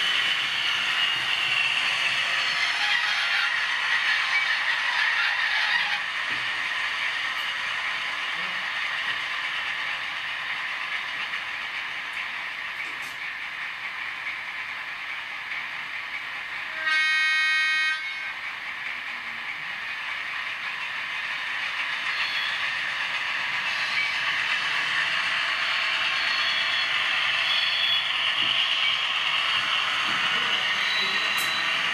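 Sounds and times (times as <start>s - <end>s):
model locomotive running hiss: 0.0s - 31.9s
model locomotive horn blast: 16.7s - 18.3s.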